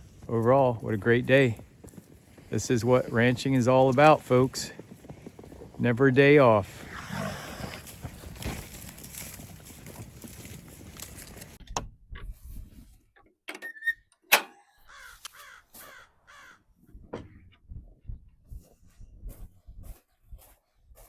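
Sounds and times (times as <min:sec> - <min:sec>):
crows cawing: 0:14.8 - 0:16.7.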